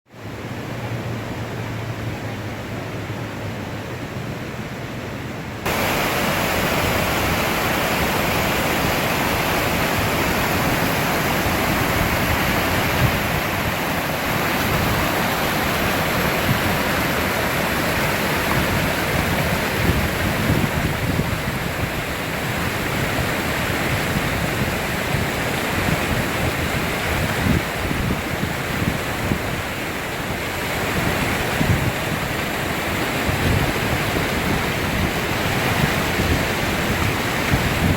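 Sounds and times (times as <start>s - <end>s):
waterfall rushing: 0.1s - 37.9s.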